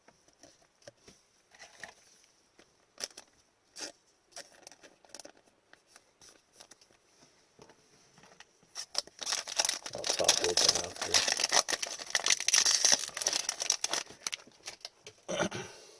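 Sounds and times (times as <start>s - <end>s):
trading cards rustling and clicking: 8.8s - 14.9s.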